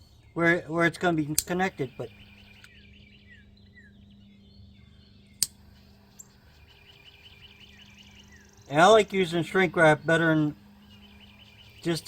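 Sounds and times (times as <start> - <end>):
steady low hum: 0.0 - 12.0
faint bird chirps: 1.6 - 12.0
sharp click: 5.4 - 5.6.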